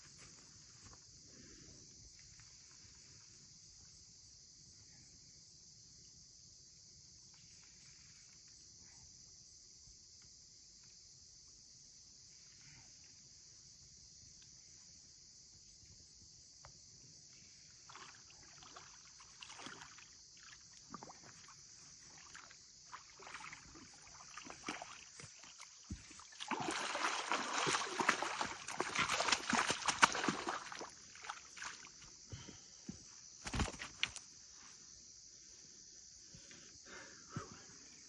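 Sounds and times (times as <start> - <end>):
insects chirring: 0.0 - 38.0
water splashing: 17.9 - 21.5, 22.1 - 32.0.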